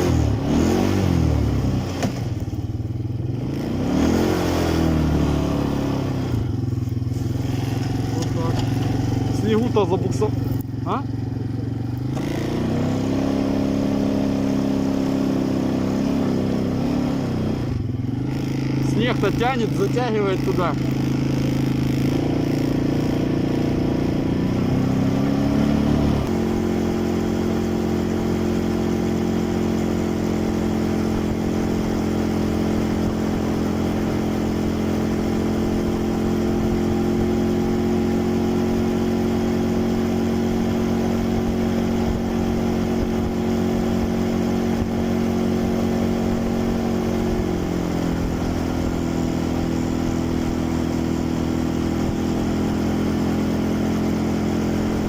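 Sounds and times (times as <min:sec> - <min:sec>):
quad bike engine running: 0:00.0 - 0:55.0.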